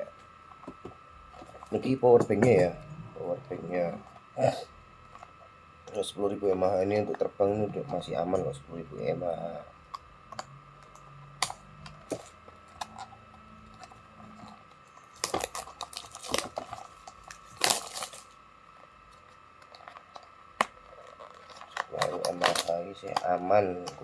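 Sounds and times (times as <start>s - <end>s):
faint steady hum: 0.0s - 24.0s
packaging rustling: 13.7s - 18.4s, 19.1s - 24.0s.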